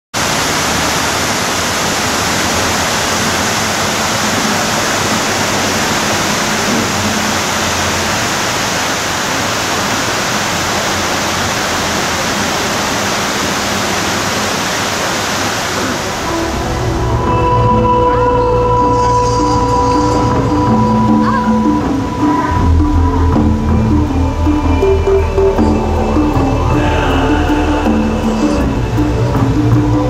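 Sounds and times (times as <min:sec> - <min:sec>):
waterfall pouring into lake: 0:00.2 - 0:16.6.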